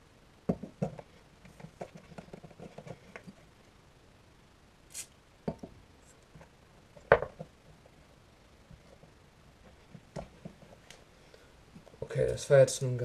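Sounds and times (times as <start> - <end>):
short hiss: 4.9 - 5.2.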